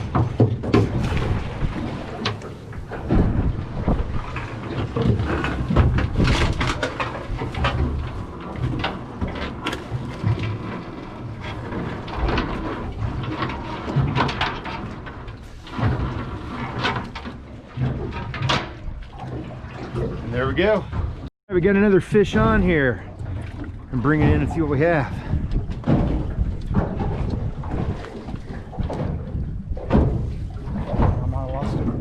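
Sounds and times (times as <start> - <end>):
knocks and rattles: 0.0 - 20.2, 23.2 - 32.0
gusty wind on microphone: 0.8 - 8.9, 22.3 - 32.0.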